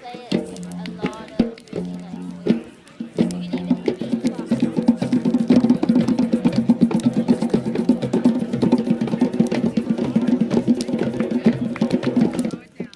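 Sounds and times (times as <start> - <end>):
didgeridoo droning: 0.4 - 12.5.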